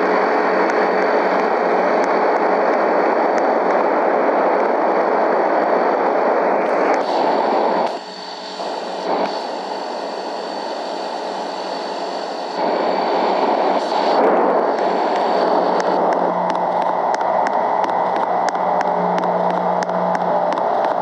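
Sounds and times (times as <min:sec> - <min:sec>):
faint high whine: 0:06.6 - 0:21.0.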